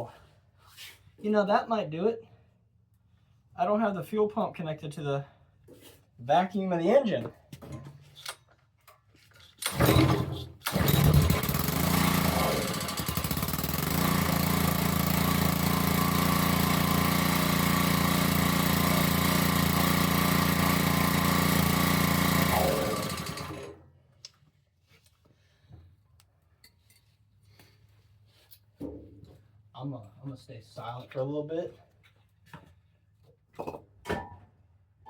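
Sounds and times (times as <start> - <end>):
engine pull-start: 9.6 - 23.8
small engine running: 9.7 - 23.8.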